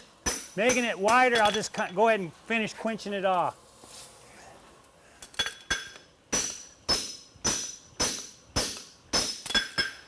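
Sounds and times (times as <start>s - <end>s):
hammer striking metal on anvil: 0.2s - 1.9s, 5.4s - 10.0s.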